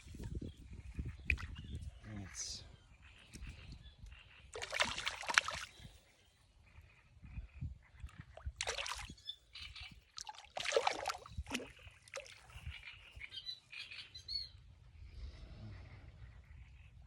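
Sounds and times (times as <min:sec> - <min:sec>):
water splashing in creek: 0:01.3 - 0:01.6, 0:04.5 - 0:05.9, 0:08.1 - 0:09.2, 0:10.0 - 0:12.8.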